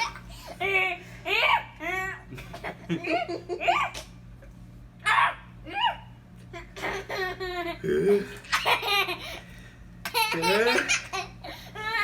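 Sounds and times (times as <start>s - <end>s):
laughter: 2.3s - 3.6s.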